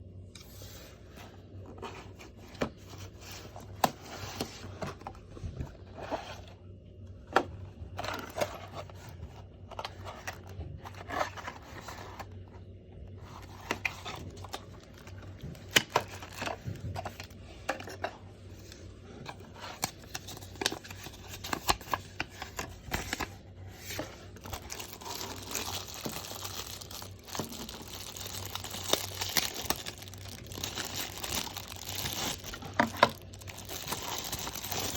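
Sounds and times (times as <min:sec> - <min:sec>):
packaging tearing and crinkling: 0:23.9 - 0:34.9.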